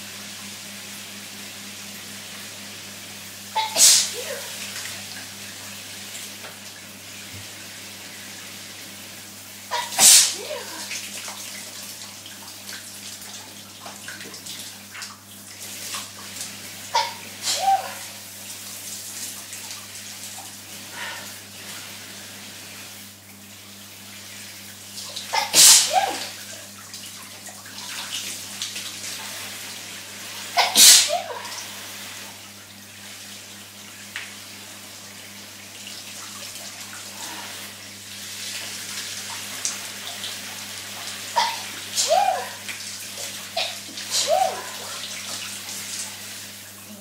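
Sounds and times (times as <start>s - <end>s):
shower running: 0.0s - 47.0s
person sneezing: 3.6s - 4.6s, 9.7s - 10.9s, 17.0s - 18.1s, 25.3s - 26.4s, 30.6s - 31.6s, 41.4s - 42.6s, 43.6s - 44.9s.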